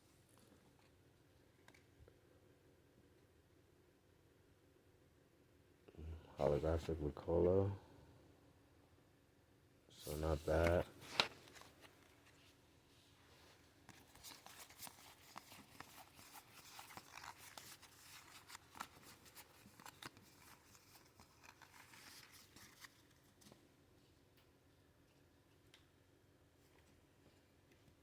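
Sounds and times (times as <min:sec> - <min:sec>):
trading cards clicking and rustling: 0:10.1 - 0:12.0, 0:13.9 - 0:23.6.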